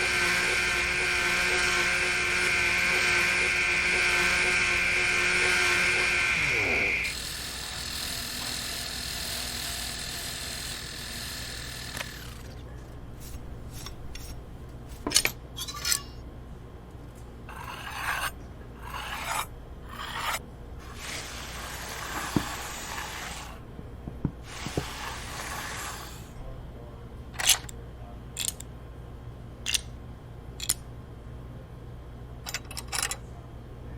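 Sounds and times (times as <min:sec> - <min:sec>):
filing on metal: 0:00.0 - 0:12.4, 0:17.5 - 0:23.6, 0:24.5 - 0:26.3
power tool motor winding down: 0:00.0 - 0:12.5.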